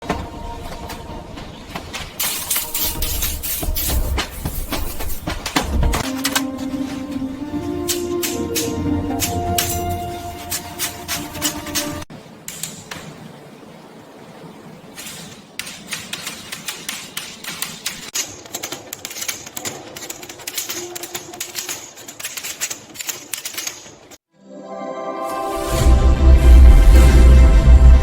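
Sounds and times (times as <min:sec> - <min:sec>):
manual typewriter key strikes: 0:15.6 - 0:23.9.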